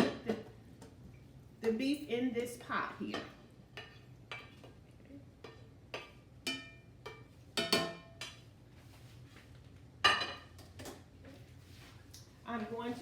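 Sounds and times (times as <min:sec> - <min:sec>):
utensil clinking against cooking pot: 0:05.4 - 0:08.4.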